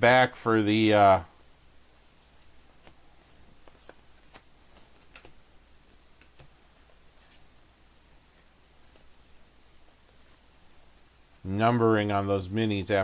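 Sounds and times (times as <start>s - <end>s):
trading cards clicking and tapping: 3.6s - 5.4s, 6.2s - 6.6s.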